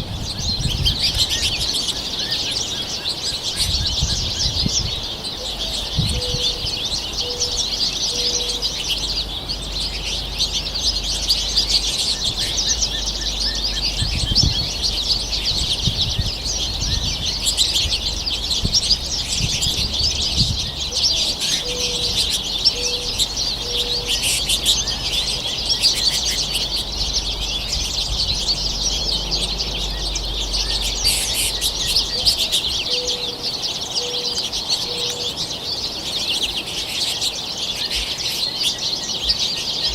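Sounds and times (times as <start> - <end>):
songbirds chirping and twittering: 0.0 - 39.9
dove cooing: 5.4 - 35.4.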